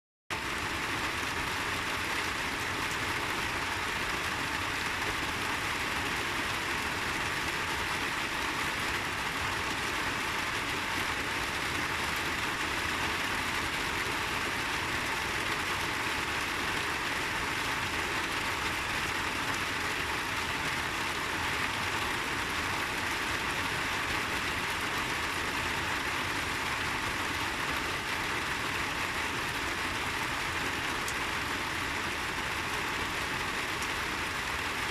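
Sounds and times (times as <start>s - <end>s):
steady rain hiss: 0.4s - 34.9s.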